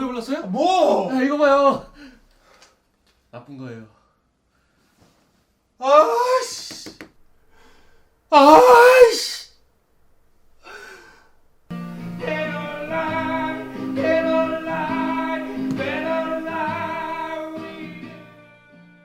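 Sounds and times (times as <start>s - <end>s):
acoustic guitar: 11.7s - 19.0s
person singing: 12.0s - 19.0s.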